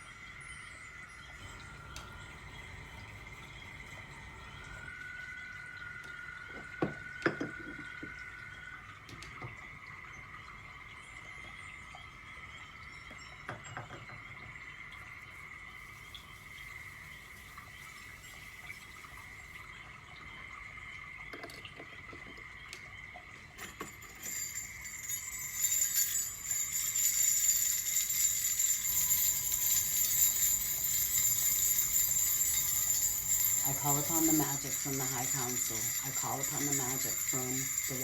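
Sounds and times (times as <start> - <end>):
jingle bells shaking: 23.6 - 38.0.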